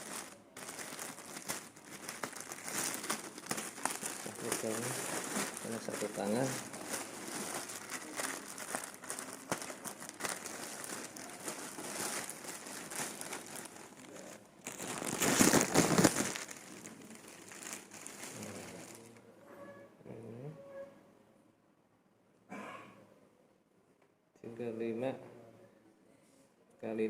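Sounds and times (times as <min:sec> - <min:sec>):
packaging wrapper crinkling: 0:00.0 - 0:19.2
wrapper crumpling: 0:00.0 - 0:19.2.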